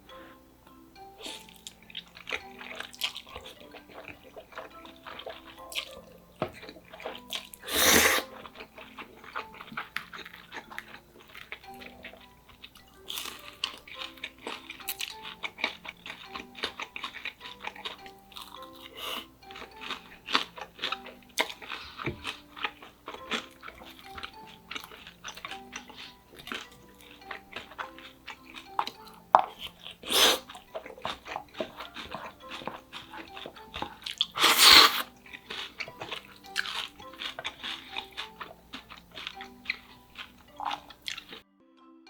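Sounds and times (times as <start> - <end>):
soft background music: 0.0 - 42.0
chewing and crunching: 1.0 - 41.4
loud mouth noises: 7.4 - 8.4, 29.4 - 30.6, 33.8 - 35.2.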